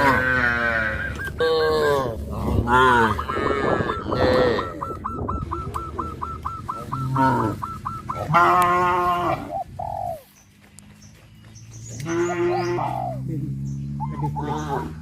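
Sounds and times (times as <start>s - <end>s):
cattle mooing: 0.0s - 4.8s, 7.0s - 7.6s, 8.2s - 9.5s, 12.0s - 13.3s.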